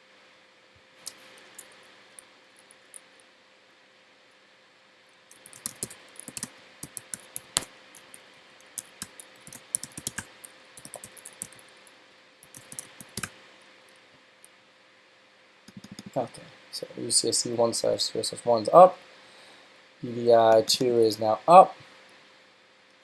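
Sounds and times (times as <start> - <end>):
typing on computer keyboard: 5.3 - 11.7, 12.4 - 13.3, 15.7 - 16.2.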